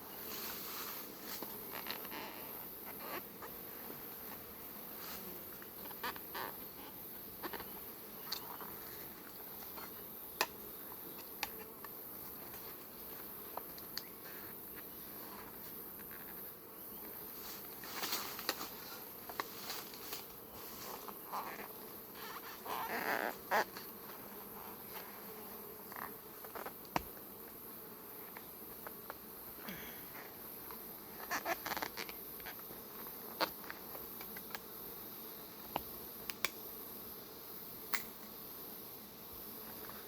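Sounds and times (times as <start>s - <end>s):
hive tool clicking and scraping: 11.2s - 12.6s, 33.4s - 34.7s, 35.7s - 36.6s, 37.9s - 38.3s.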